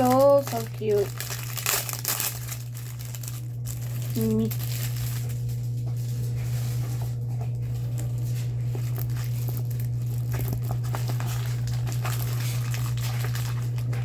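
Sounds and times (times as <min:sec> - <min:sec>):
plastic packaging crinkling: 0:00.0 - 0:14.0
steady low hum: 0:00.0 - 0:14.0.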